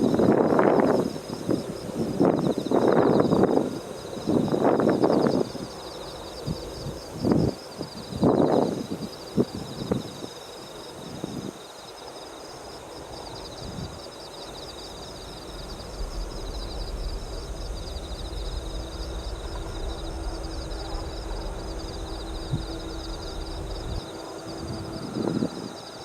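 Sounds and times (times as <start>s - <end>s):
insects trilling: 0.0s - 26.0s
jet engines rumbling: 0.0s - 26.0s
steady hum: 13.4s - 26.0s.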